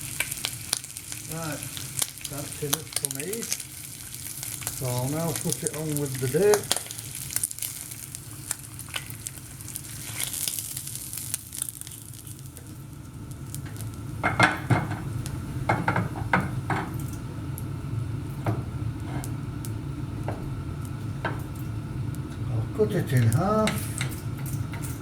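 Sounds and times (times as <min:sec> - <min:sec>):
bacon sizzling in a frying pan: 0:00.0 - 0:25.0
steady low hum: 0:00.0 - 0:25.0
utensil knocking against pan: 0:15.7 - 0:16.9.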